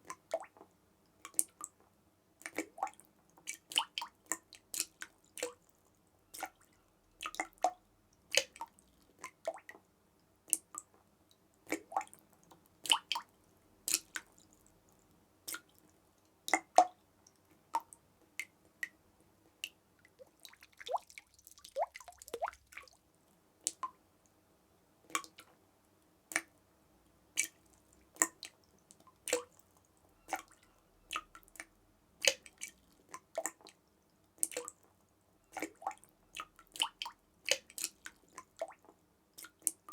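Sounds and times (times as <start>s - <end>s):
water drops dripping: 6.3s - 9.9s, 11.7s - 13.3s, 13.9s - 15.9s, 16.5s - 19.0s, 19.6s - 23.0s, 23.6s - 24.0s, 25.1s - 25.6s, 26.3s - 26.5s, 27.4s - 34.9s, 35.5s - 39.9s.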